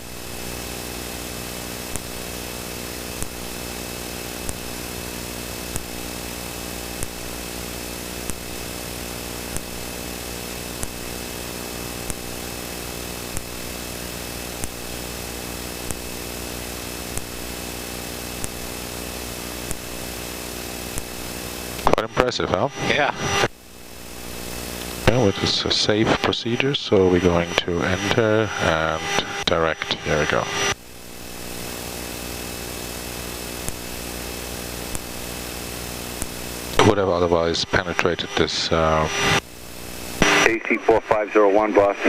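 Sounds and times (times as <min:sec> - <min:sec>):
jet engines humming: 0:20.9 - 0:30.8, 0:36.8 - 0:42.0.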